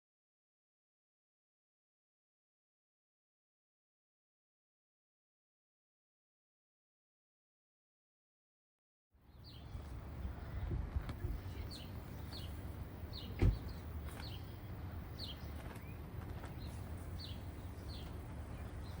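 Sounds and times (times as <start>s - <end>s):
sharp thump: 13.3s - 13.7s.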